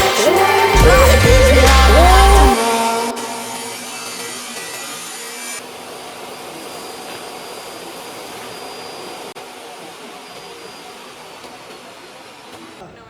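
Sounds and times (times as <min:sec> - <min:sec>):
background music: 0:00.0 - 0:04.3.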